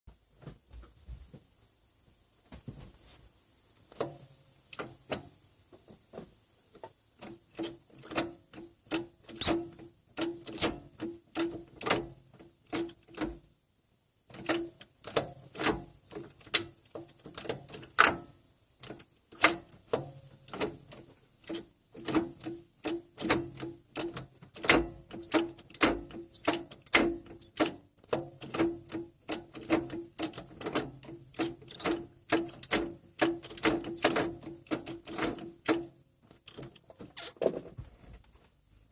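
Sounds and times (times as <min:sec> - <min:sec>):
gear shifter squeaking and clicking: 0:07.4 - 0:08.3, 0:09.3 - 0:09.8, 0:10.4 - 0:10.8, 0:21.0 - 0:22.2, 0:25.2 - 0:26.6, 0:27.3 - 0:27.6, 0:31.4 - 0:32.0, 0:33.5 - 0:35.4.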